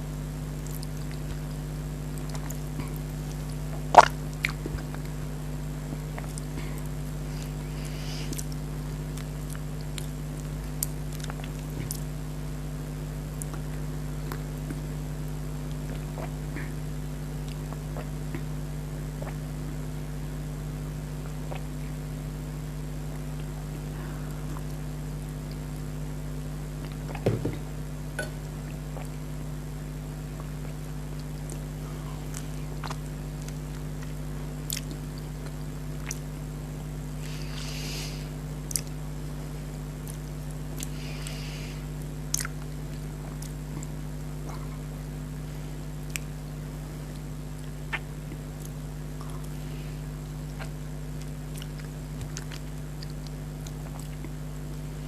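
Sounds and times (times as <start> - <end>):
low hum: 0.0 - 55.0
person chewing: 0.6 - 5.3, 5.9 - 12.2, 15.7 - 16.6, 30.3 - 36.3, 37.2 - 39.0, 42.2 - 44.9, 47.1 - 54.4.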